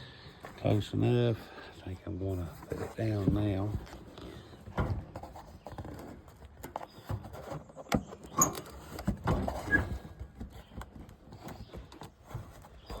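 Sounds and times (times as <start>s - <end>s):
faint squeaks: 0.5s - 13.0s
plastic panel clicking and rattling: 2.8s - 13.0s.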